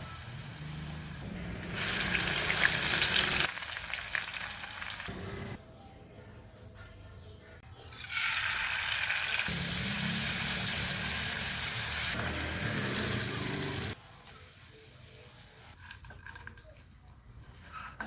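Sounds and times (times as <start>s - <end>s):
food sizzling in hot oil: 1.7s - 5.1s, 7.9s - 14.0s.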